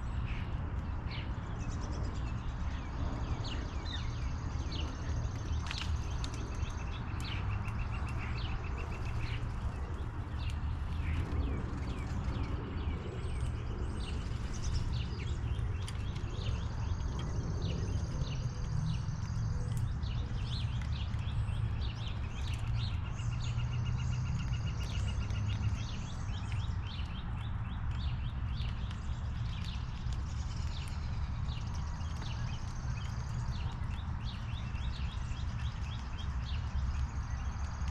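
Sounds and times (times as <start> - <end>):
steady low rumble: 0.0 - 25.0
wild birds chirping: 0.0 - 37.9.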